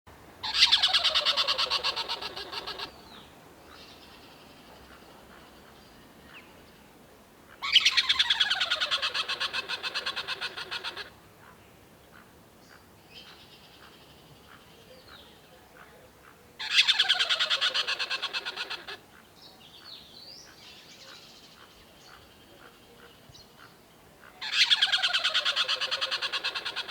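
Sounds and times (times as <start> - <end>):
squirrel rattling chatter call: 0.4 - 2.9, 7.6 - 11.1, 16.6 - 19.0, 24.4 - 26.9.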